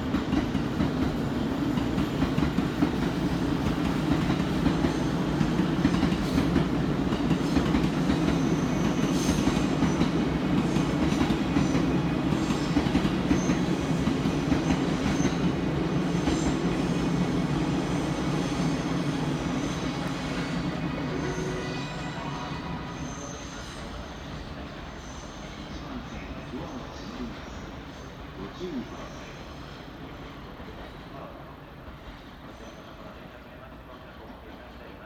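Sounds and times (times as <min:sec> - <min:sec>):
electric train rumbling on track: 0:00.0 - 0:35.0
faint high wheel squeals: 0:19.6 - 0:26.0.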